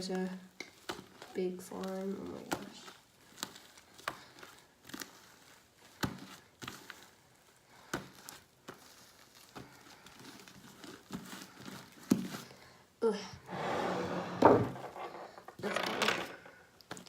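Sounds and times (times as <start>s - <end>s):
slime kneaded by hand: 0.0s - 12.6s.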